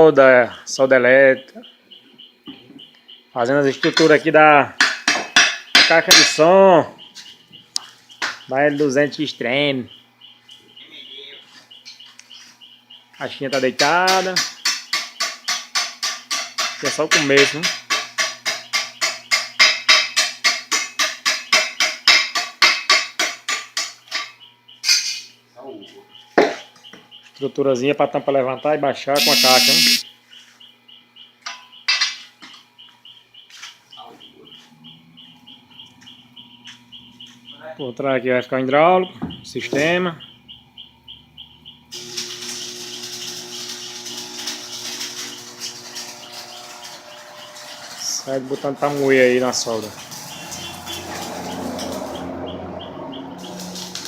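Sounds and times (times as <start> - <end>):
hammer striking metal: 4.8 - 6.5, 13.5 - 25.0
welding arc crackling: 29.2 - 30.0, 41.9 - 52.4, 53.2 - 54.0.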